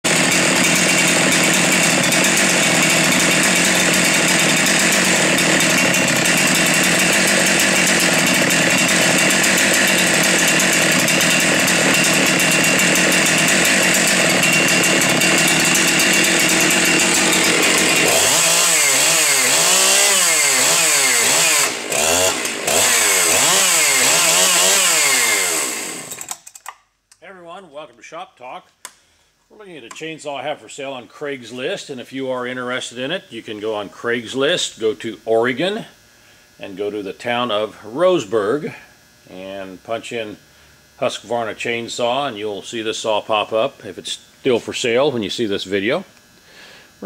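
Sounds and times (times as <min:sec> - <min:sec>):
chainsaw revving: 0:00.1 - 0:26.7.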